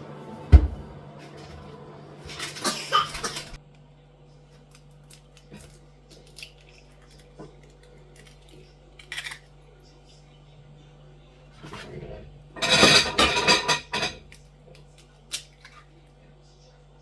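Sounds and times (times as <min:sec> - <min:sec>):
steady low hum: 0:00.0 - 0:17.0
dishes clattering: 0:02.3 - 0:03.6, 0:12.6 - 0:14.3.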